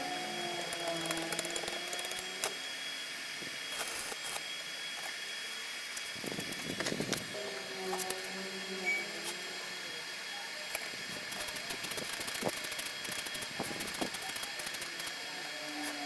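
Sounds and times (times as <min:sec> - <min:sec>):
coconut grating noise: 0:00.0 - 0:02.7, 0:05.9 - 0:16.0
motor high whine: 0:00.0 - 0:16.0
scattered clicks: 0:00.6 - 0:02.5, 0:10.7 - 0:15.2.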